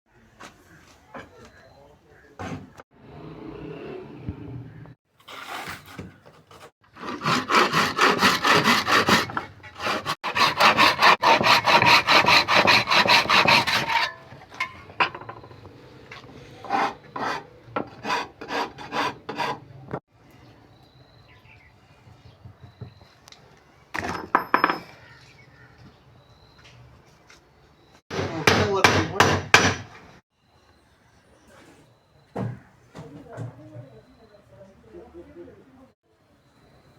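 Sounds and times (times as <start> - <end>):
hand tool sawing wood: 5.2 - 14.5, 16.2 - 19.9.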